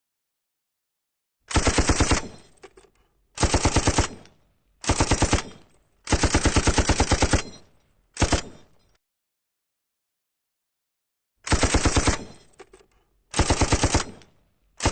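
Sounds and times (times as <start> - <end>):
machine gun bursts: 1.5 - 4.2, 4.8 - 8.7, 11.4 - 14.9.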